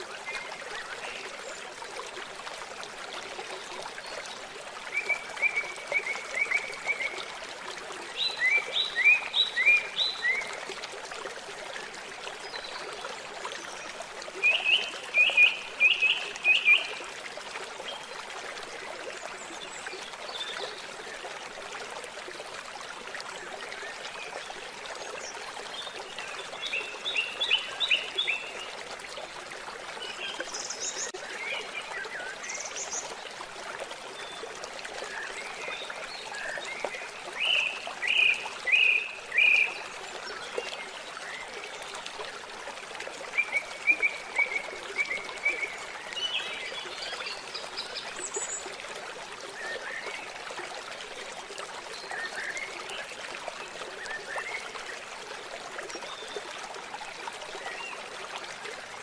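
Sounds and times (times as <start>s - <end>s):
water trickling: 0.0s - 59.0s.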